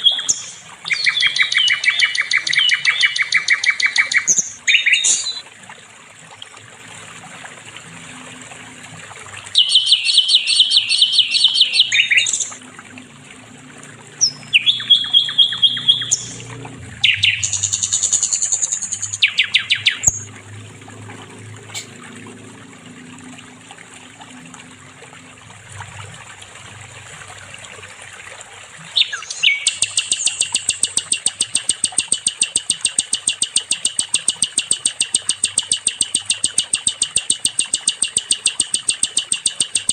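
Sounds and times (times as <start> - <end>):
bird singing high notes: 0.0 - 5.4, 9.6 - 12.6, 14.2 - 20.3, 29.0 - 39.9.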